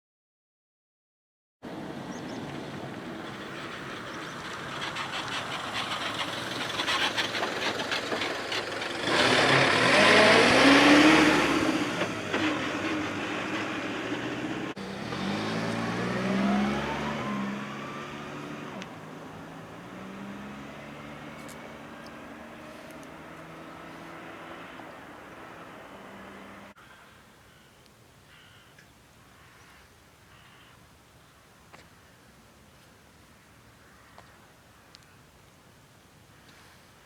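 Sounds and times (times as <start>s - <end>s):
engine speeding up: 1.7s - 26.8s
motor vehicle passing: 1.7s - 26.8s.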